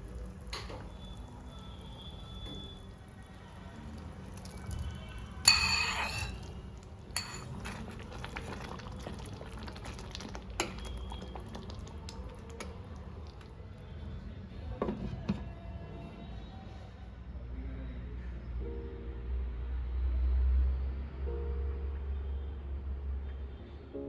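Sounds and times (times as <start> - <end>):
metal utensils clanging on cookware: 5.4 - 6.5, 7.1 - 8.0.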